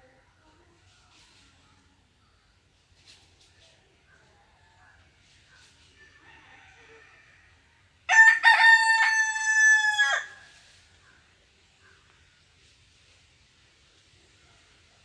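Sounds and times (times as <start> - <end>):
rooster crowing: 6.1 - 10.5.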